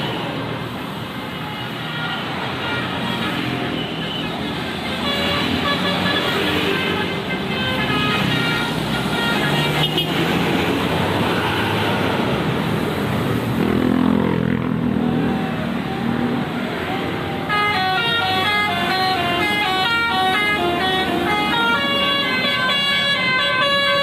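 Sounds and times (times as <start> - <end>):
bus engine: 0.0 - 24.0
multi-tone bus horn melody: 1.3 - 10.9, 15.3 - 24.0.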